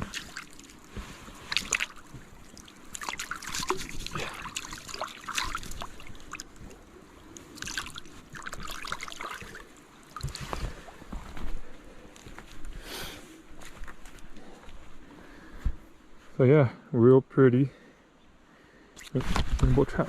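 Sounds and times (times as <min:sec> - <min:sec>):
creek water splashing and trickling: 0:00.0 - 0:12.8.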